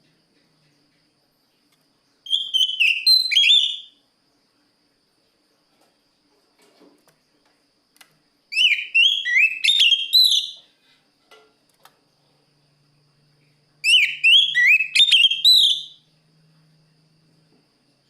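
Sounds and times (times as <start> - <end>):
bird singing whistled notes: 2.2 - 4.0, 8.5 - 10.7, 13.8 - 16.1.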